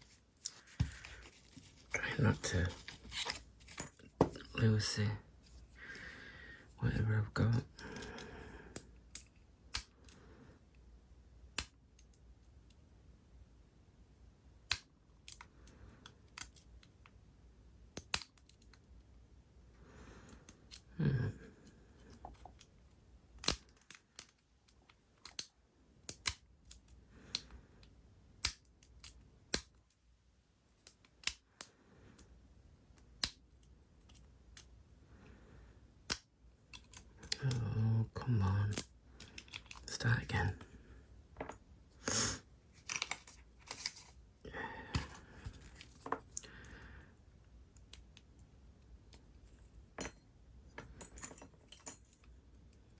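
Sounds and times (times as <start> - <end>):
lock picks clicking in padlock: 23.4 - 24.4.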